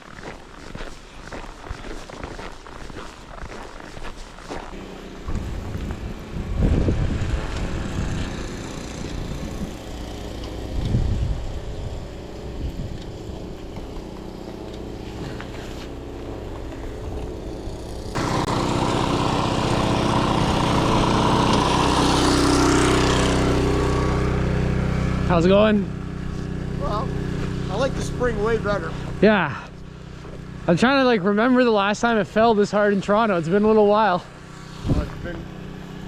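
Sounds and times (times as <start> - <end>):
loud steady engine: 0.0 - 36.0
wind rumbling on microphone: 5.3 - 9.9, 10.6 - 13.8, 34.8 - 35.4.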